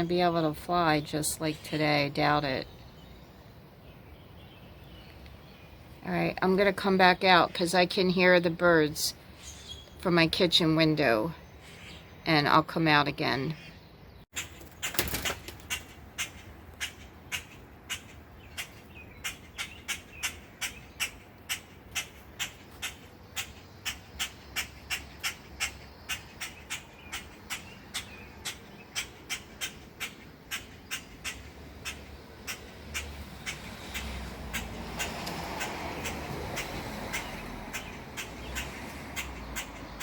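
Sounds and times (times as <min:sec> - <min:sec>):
bird squawking: 0:15.6 - 0:40.0.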